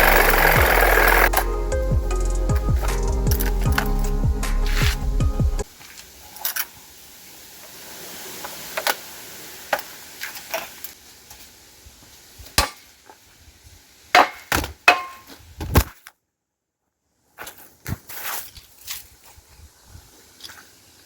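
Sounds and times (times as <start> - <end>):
hand tools striking metal: 14.2 - 15.3.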